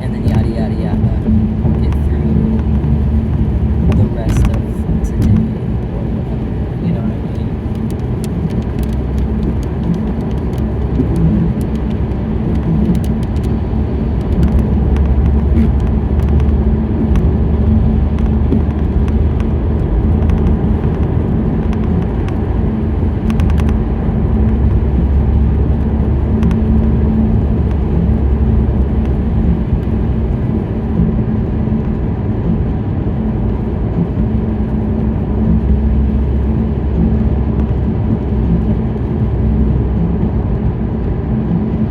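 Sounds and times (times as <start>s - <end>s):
car road rumble and hum: 0.0s - 41.9s
light ticks: 7.2s - 31.1s.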